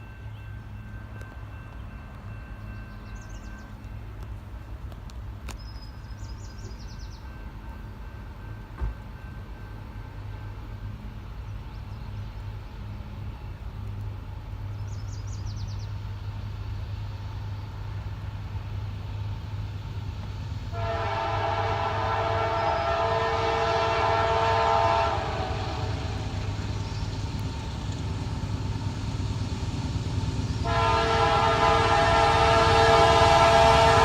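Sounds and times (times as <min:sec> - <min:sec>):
diesel locomotive rumble: 0:00.0 - 0:34.0
locomotive air horn: 0:20.7 - 0:26.4, 0:30.6 - 0:34.0.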